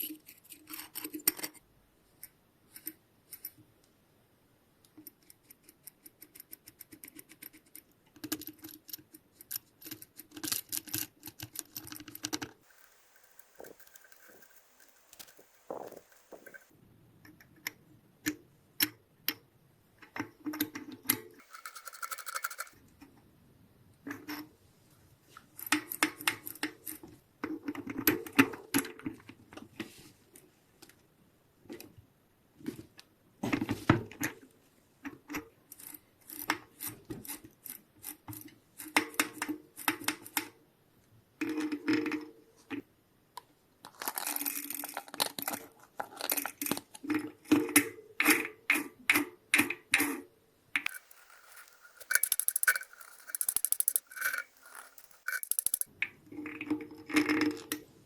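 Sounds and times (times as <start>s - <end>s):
metal parts and tools clinking: 12.6s - 16.7s, 21.4s - 22.8s, 50.9s - 55.9s.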